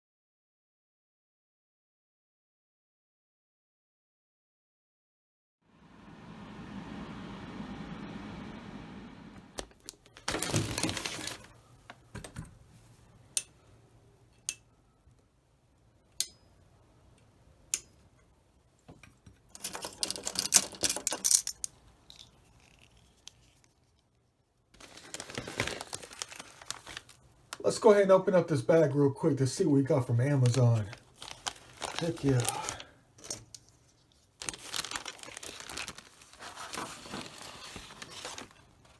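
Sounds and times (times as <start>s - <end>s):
rustling and crinkling: 9.5s - 13.2s, 18.8s - 27.8s, 30.1s - 38.9s.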